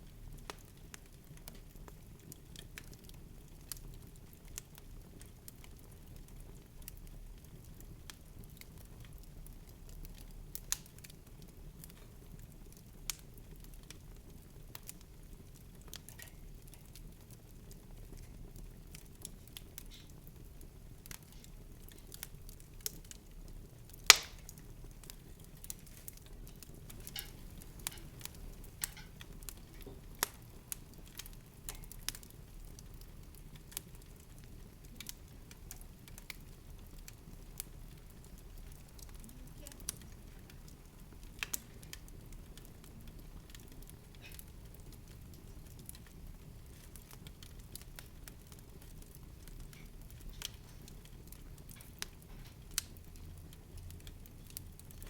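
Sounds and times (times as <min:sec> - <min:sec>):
sharp crackles and clicks: 0:15.6 - 0:55.0.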